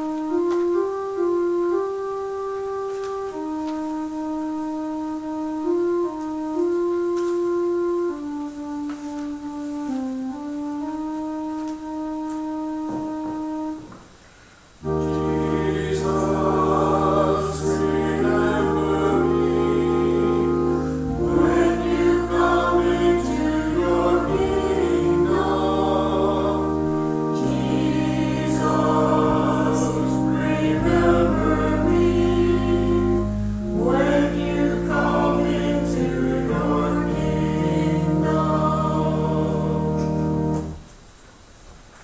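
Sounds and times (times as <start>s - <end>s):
keyboard chords: 0.0s - 14.1s, 14.8s - 41.0s
choir singing: 14.8s - 40.8s
steady bass: 14.9s - 40.8s.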